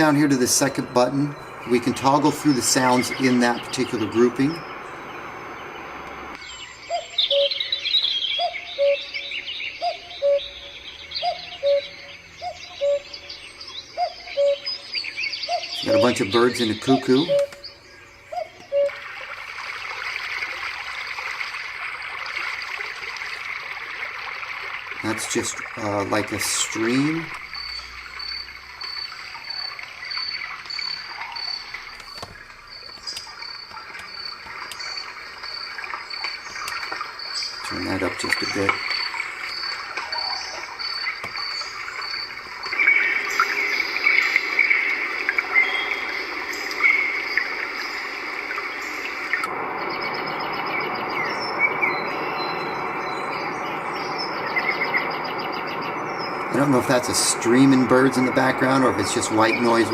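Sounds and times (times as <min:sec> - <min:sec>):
recorded birds chirping: 0:00.0 - 0:59.9
two-note cuckoo call: 0:06.9 - 0:07.8, 0:08.4 - 0:13.3, 0:15.5 - 0:17.6, 0:18.3 - 0:19.0
trickle of running water: 0:18.8 - 0:51.3.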